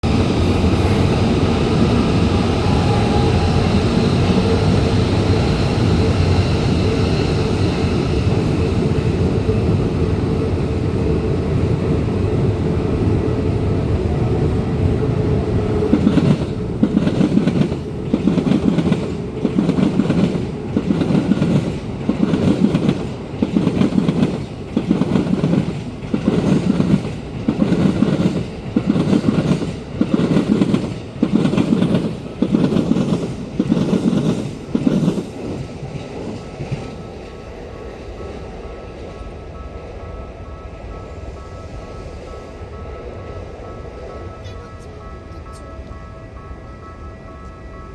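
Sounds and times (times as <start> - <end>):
train running rumble: 0.0 - 47.9
train wheels clacking over rail joints: 15.7 - 37.0.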